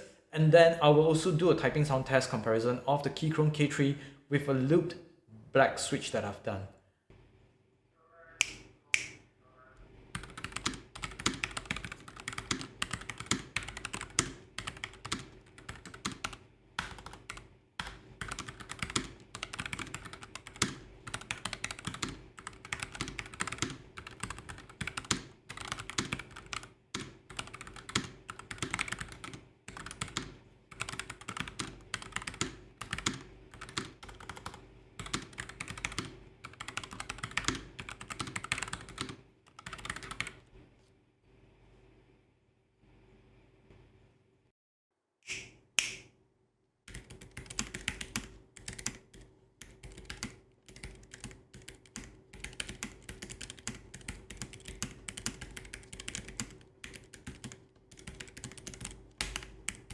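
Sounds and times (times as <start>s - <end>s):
mechanical keyboard typing: 10.2s - 40.4s, 46.9s - 59.9s.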